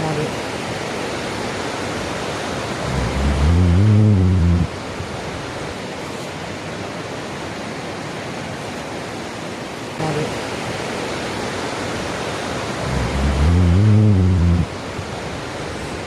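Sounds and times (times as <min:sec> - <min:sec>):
flowing water: 0:00.0 - 0:16.0
low wavering hum: 0:02.8 - 0:04.7, 0:12.8 - 0:14.7.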